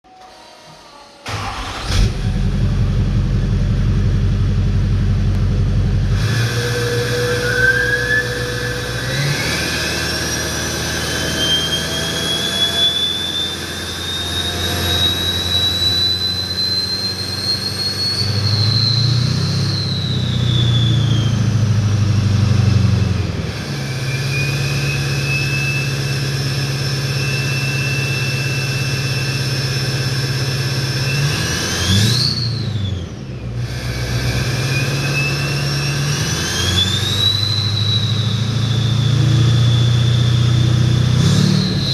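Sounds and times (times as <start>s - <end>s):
diesel truck engine under throttle: 1.3s - 41.9s
turbo whistle: 6.1s - 21.6s, 23.7s - 29.4s, 33.7s - 41.9s.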